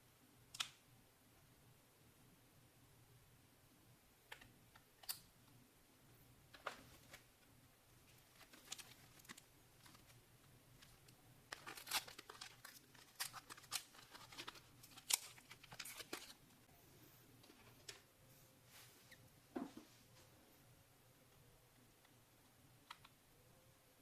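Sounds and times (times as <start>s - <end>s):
crinkly rustles: 8.0s - 16.6s.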